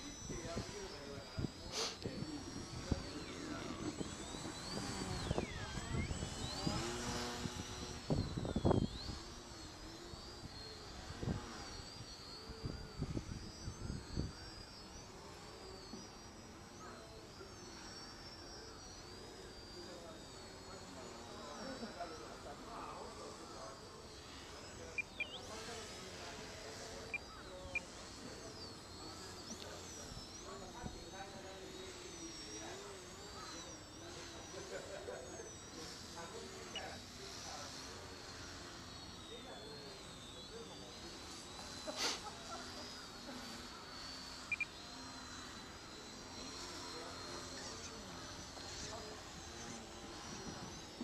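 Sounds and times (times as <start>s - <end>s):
small drone motors whining: 0.0s - 51.0s
short electronic beeps: 24.9s - 25.6s, 27.0s - 30.5s, 43.4s - 46.6s.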